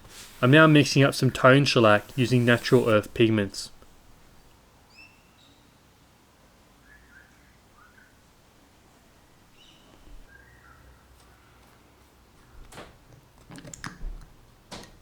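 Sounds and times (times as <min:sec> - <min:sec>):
faint bird chirps: 0:06.8 - 0:08.2, 0:09.6 - 0:11.1.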